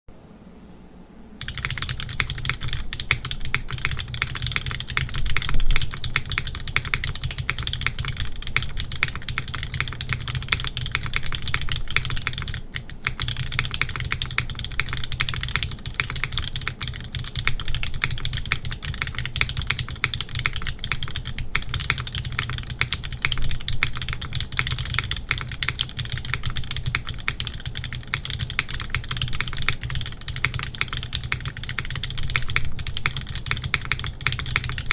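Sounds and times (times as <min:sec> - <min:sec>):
mechanical keyboard typing: 0:01.4 - 0:34.9.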